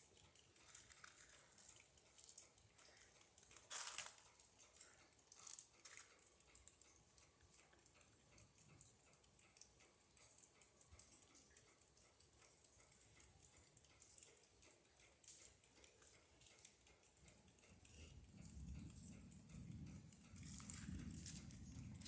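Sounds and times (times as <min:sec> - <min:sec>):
faint ticks and patter: 0:00.0 - 0:22.0
low rumble: 0:18.3 - 0:22.0.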